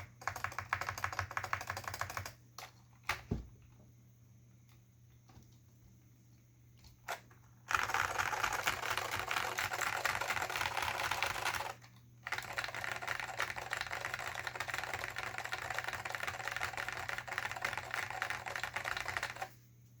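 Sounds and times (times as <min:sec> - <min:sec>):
fast keyboard typing: 0:00.0 - 0:02.8, 0:07.1 - 0:19.6.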